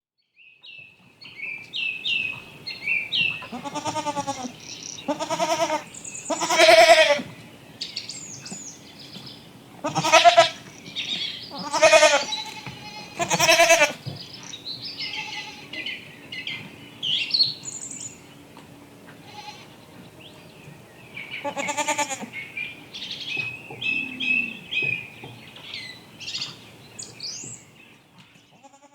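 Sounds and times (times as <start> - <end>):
small birds chirping: 0.6 - 18.5, 19.3 - 28.7
goats bleating: 3.4 - 7.3, 9.8 - 10.6, 11.5 - 14.0, 15.1 - 15.8, 19.2 - 19.8, 21.4 - 22.3.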